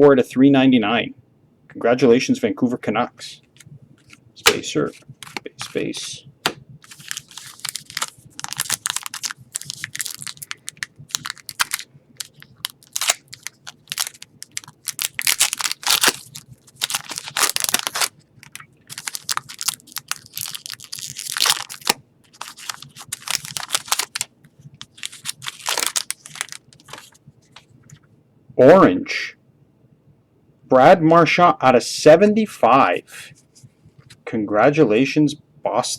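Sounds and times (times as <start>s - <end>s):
cards being handled: 3.5s - 28.0s
foil wrapper crinkling: 3.6s - 27.7s.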